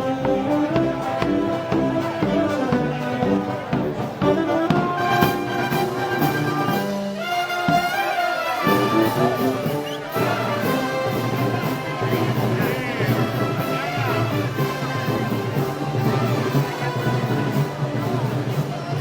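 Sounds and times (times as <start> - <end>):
brass band playing: 0.0 - 19.0.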